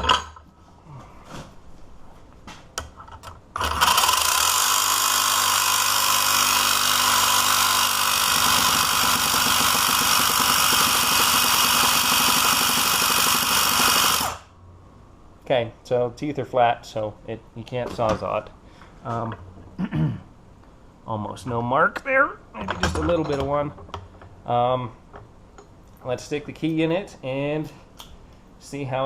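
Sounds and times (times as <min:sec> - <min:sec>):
reciprocating saw cutting metal: 0:03.7 - 0:14.5.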